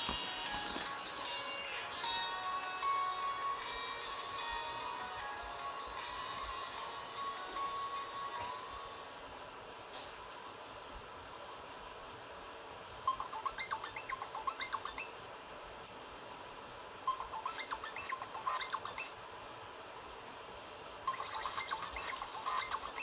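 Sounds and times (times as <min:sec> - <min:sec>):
bird-like chirping ringtone: 0:13.1 - 0:15.2, 0:17.1 - 0:19.1, 0:21.1 - 0:23.0.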